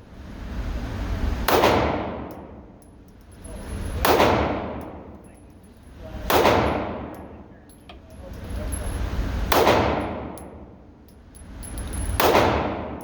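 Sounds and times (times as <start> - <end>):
echoing handgun shots: 9.5 - 10.3, 12.2 - 13.0.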